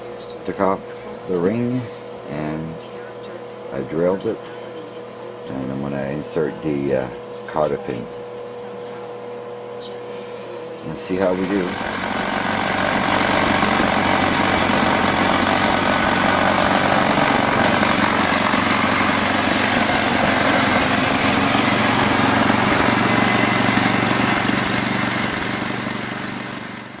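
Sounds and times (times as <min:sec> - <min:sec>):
machine humming with loud hiss: 0:10.0 - 0:27.0.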